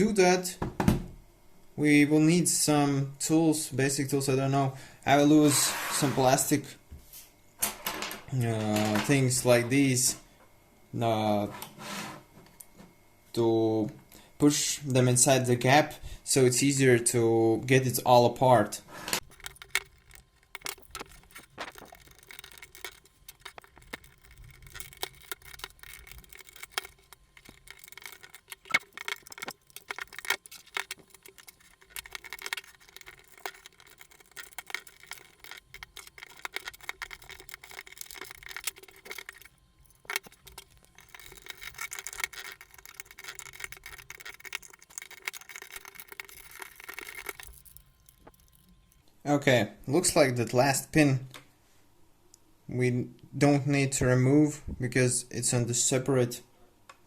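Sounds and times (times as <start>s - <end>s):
faint steady hum: 0.0s - 57.0s
plastic tools scraping plastic: 19.0s - 49.0s.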